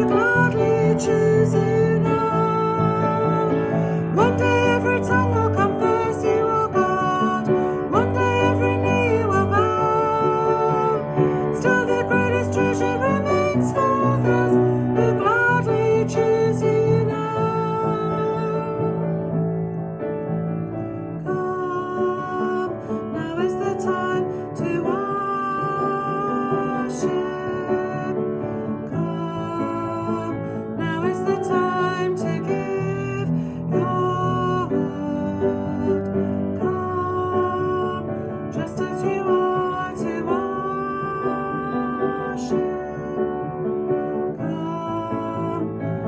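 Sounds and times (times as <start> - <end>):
worship song with guitar and keyboard: 0.0 - 19.7
person singing: 0.0 - 46.0
piano accompaniment: 0.0 - 46.0.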